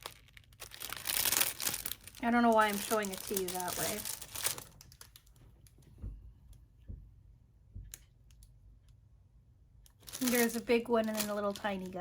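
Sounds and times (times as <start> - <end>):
packaging rustle: 0.0 - 5.4, 10.0 - 12.0.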